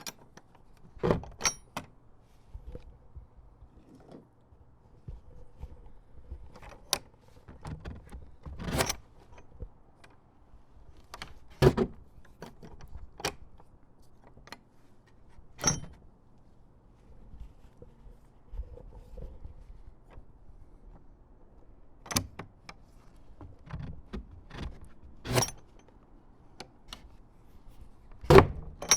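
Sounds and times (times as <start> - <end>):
metal latch clicking and rattling: 0.0 - 1.9, 7.6 - 10.2, 15.6 - 16.0, 22.0 - 22.8, 23.6 - 25.9, 28.3 - 28.9.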